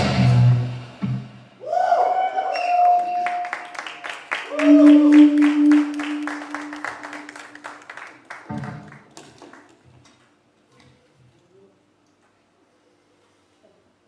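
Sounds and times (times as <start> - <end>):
audience clapping: 2.7 - 10.0
amplified band held note: 4.5 - 7.8.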